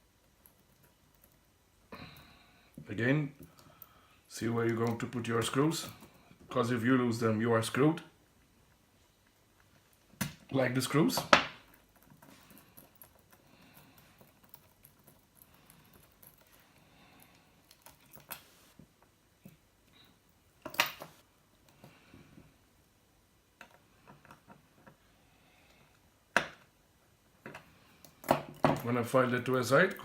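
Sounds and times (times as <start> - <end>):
small steel parts clicking: 11.2 - 18.4.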